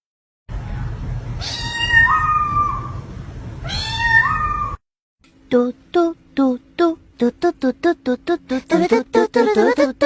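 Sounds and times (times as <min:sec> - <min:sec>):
cat meowing: 0:01.4 - 0:03.0, 0:03.6 - 0:04.8.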